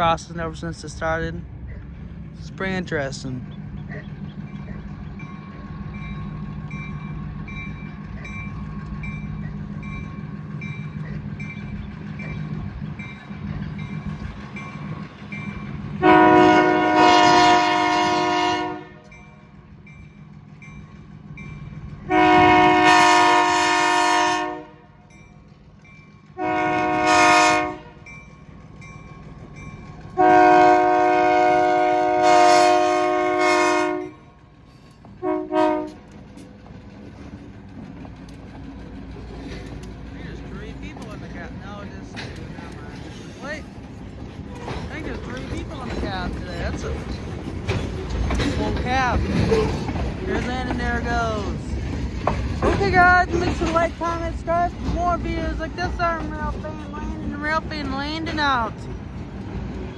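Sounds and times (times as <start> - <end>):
crossing bell ringing: 2.5 - 18.4, 19.0 - 23.1, 25.0 - 26.6, 27.4 - 31.1, 40.3 - 51.8
locomotive air horn blasts: 16.0 - 19.2, 22.1 - 25.0, 26.4 - 28.0, 30.2 - 34.2, 35.2 - 36.0.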